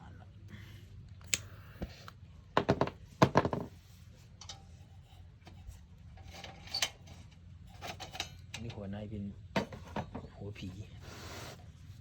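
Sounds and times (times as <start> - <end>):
metal lantern clicks and taps: 4.4 - 4.6.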